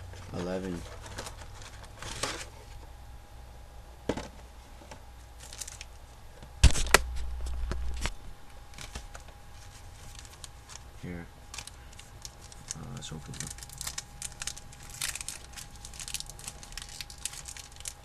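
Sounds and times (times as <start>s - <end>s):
cards and wrappers clicking: 11.5s - 18.0s.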